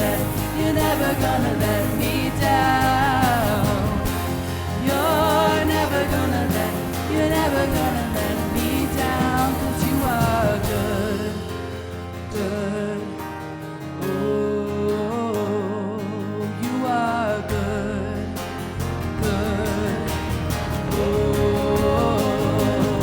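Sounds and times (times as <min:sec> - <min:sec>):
worship band music: 0:00.0 - 0:11.4, 0:19.2 - 0:23.0
person singing: 0:00.0 - 0:11.7, 0:19.2 - 0:23.0
guitar: 0:00.0 - 0:23.0.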